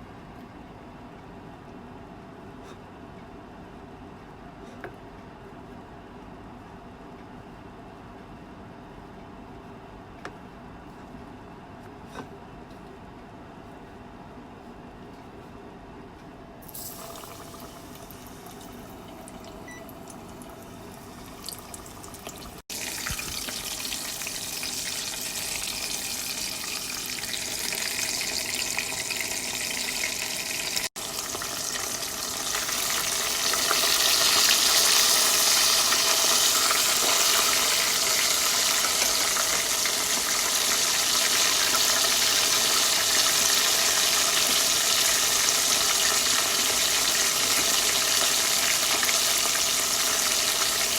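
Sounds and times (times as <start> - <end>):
food sizzling in a frying pan: 16.7 - 19.6, 20.2 - 50.9.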